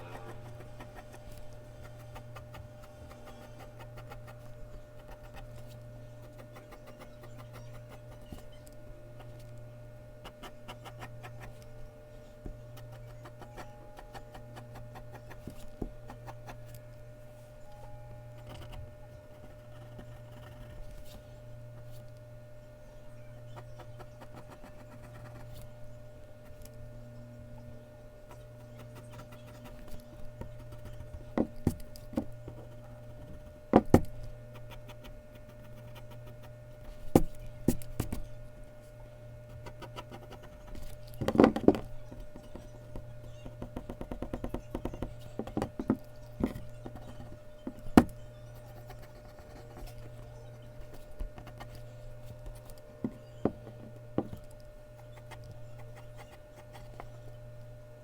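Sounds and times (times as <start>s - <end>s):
pencil scratching on paper: 0.0s - 8.5s, 10.2s - 11.6s, 18.4s - 21.2s, 48.5s - 52.7s, 55.0s - 57.2s
steady low hum: 0.0s - 58.0s
pencil taps and knocks: 43.4s - 47.0s.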